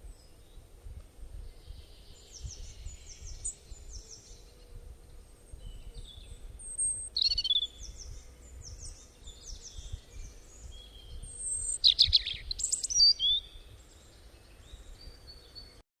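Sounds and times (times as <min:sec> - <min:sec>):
faint low rumble: 0:00.0 - 0:12.6
songbirds chirping and whistling: 0:00.0 - 0:15.8.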